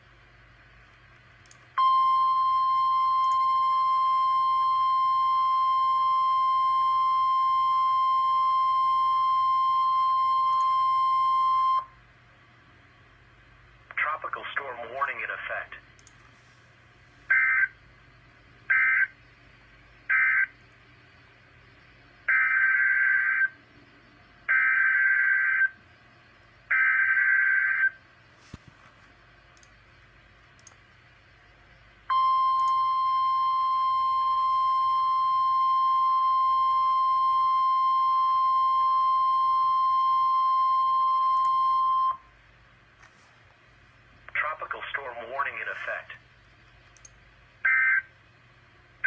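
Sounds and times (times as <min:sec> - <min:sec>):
steady weather alert tone: 0:44.3 - 0:46.2.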